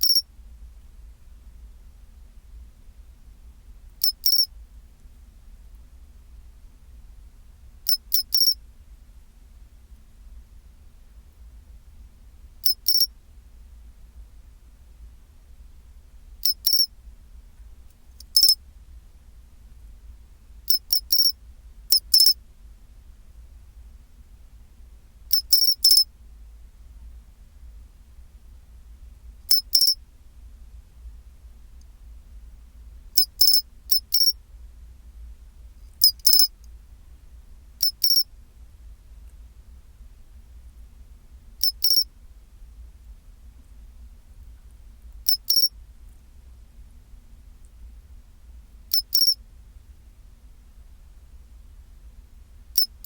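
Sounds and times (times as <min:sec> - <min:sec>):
cricket chirping: 0:00.0 - 0:00.3, 0:04.0 - 0:04.5, 0:07.9 - 0:08.6, 0:12.6 - 0:13.1, 0:16.4 - 0:16.9, 0:18.2 - 0:18.6, 0:20.7 - 0:22.4, 0:25.3 - 0:26.1, 0:29.5 - 0:30.0, 0:33.2 - 0:34.4, 0:36.0 - 0:36.6, 0:37.8 - 0:38.3, 0:41.6 - 0:42.1, 0:45.2 - 0:45.7, 0:48.9 - 0:49.4, 0:52.8 - 0:53.0.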